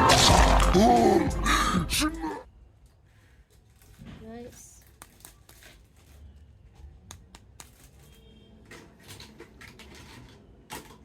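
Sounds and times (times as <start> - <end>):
plastic packaging rustling: 3.0 - 11.0.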